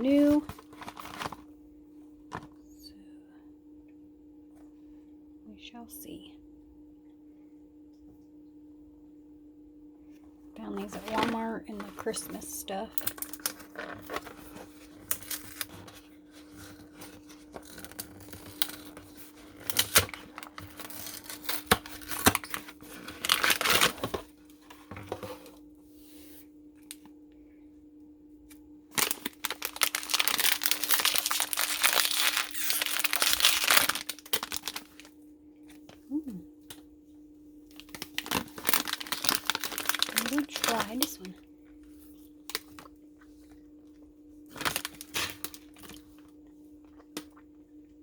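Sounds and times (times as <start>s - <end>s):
plastic bag crinkling: 0.0s - 1.5s, 10.6s - 24.3s, 28.9s - 35.2s, 37.7s - 41.4s, 44.5s - 46.3s
faint steady hum: 0.0s - 48.0s
plastic bag tearing: 0.1s - 1.4s, 13.0s - 24.3s, 28.9s - 35.1s, 37.7s - 41.3s, 44.5s - 46.1s.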